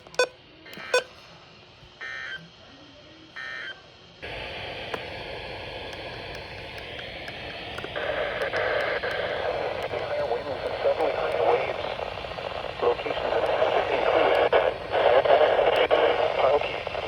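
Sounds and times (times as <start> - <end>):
radio static hiss: 0.0 - 2.2, 4.2 - 17.0.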